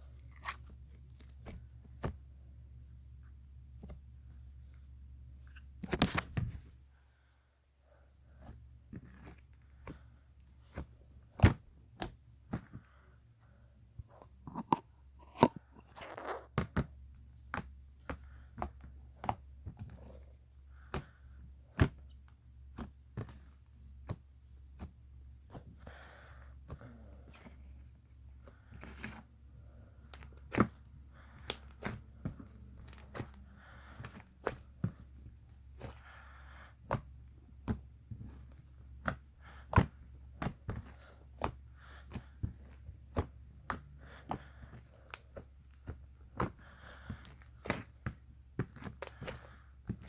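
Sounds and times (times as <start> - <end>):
slime squishing: 0.0 - 7.3, 7.9 - 50.0.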